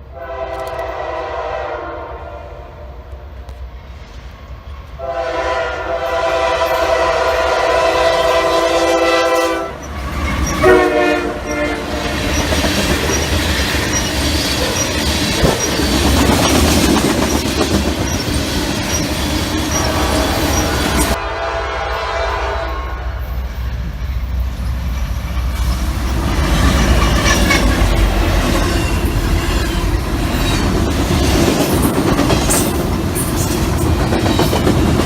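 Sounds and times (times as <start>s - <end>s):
train rumble and wheel clatter: 0.0s - 35.0s
locomotive air horn blasts: 0.1s - 3.3s, 5.0s - 9.8s, 10.6s - 12.2s, 19.8s - 23.4s.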